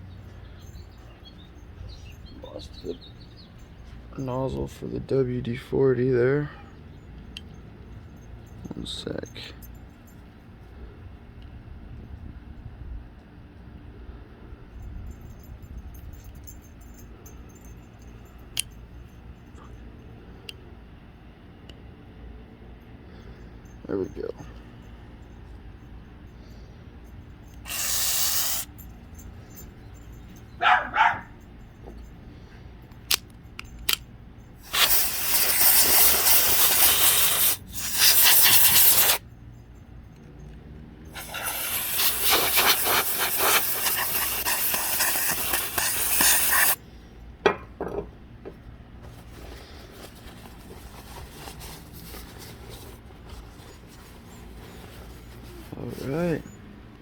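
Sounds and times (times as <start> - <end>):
compressed air duster spraying: 27.6 - 28.8, 34.6 - 39.2, 41.2 - 46.8
aerosol can hissing: 27.7 - 28.7, 34.6 - 39.2, 41.2 - 46.8.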